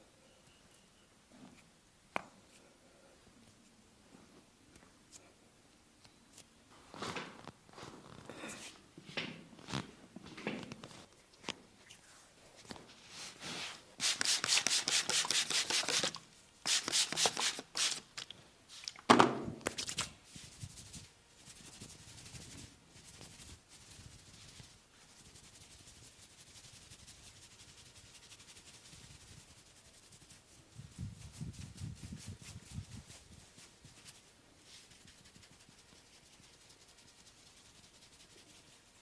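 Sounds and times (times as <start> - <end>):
hands rubbing over skin: 10.8 - 18.9, 19.6 - 30.6, 31.2 - 39.0.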